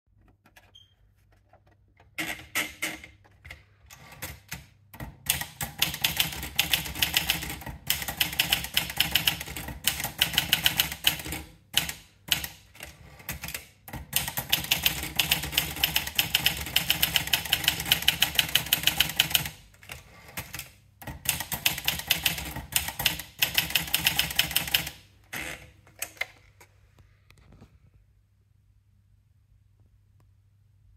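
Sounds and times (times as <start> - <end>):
manual typewriter typing: 2.0 - 26.3.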